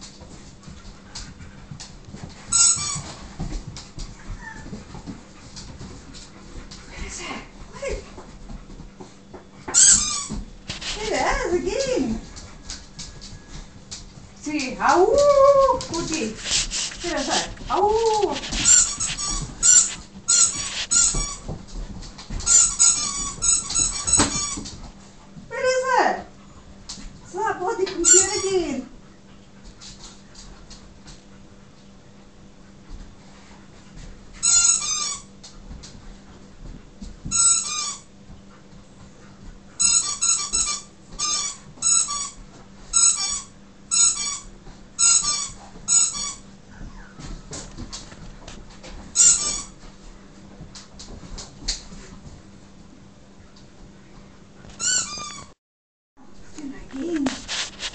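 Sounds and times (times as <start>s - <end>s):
rubber squeaky toy squeaking: 2.5s - 3.0s, 9.7s - 11.1s, 15.9s - 21.4s, 22.4s - 24.6s, 28.0s - 28.4s, 34.4s - 35.2s, 37.3s - 38.0s, 39.8s - 42.4s, 43.0s - 46.4s, 49.2s - 49.7s, 54.8s - 55.4s.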